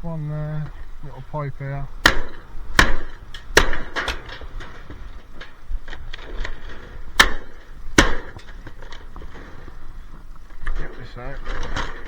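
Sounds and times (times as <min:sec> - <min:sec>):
hammer striking metal: 0:02.0 - 0:04.4
loose parts rattling: 0:02.0 - 0:12.0.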